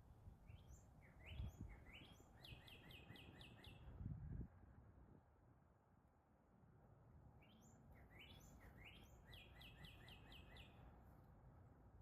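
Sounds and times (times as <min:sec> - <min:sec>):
wind rumble on microphone: 0:00.2 - 0:02.0, 0:03.8 - 0:05.3.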